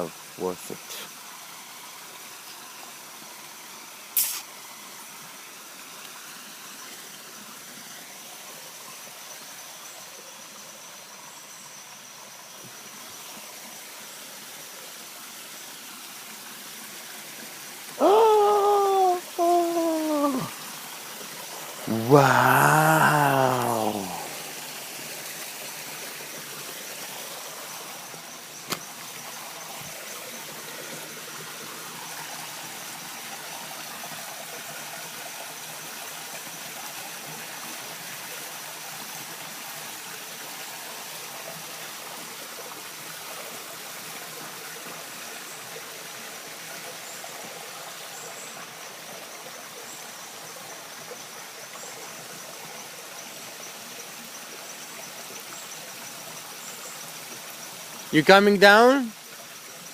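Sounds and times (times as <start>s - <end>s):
waterfall rushing: 17.3s - 30.4s.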